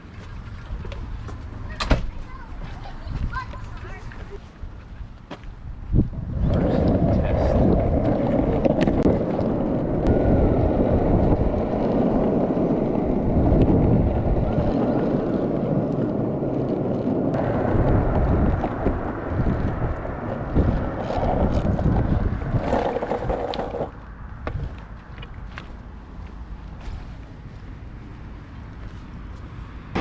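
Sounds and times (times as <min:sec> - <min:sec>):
skateboard wheels rolling on pavement: 0:00.0 - 0:30.0
wind on microphone: 0:02.9 - 0:25.5.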